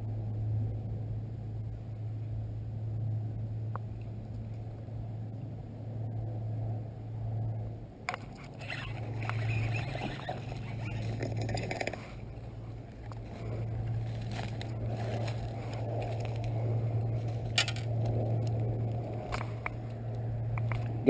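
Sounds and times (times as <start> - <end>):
boat motor humming: 0.0 - 21.0
scraping and rattling: 8.1 - 18.2.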